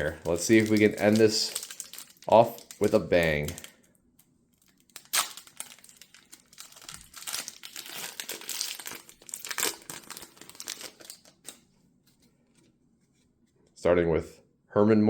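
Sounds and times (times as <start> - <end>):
plastic wrapper tearing and crinkling: 0.0 - 3.9, 4.5 - 11.6.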